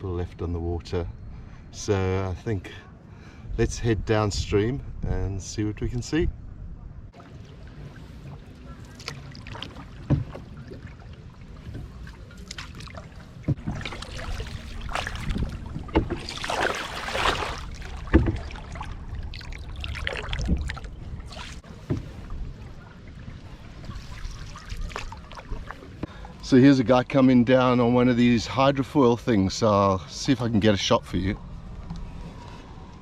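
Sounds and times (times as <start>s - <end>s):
paddle splashing in water: 7.1s - 26.4s.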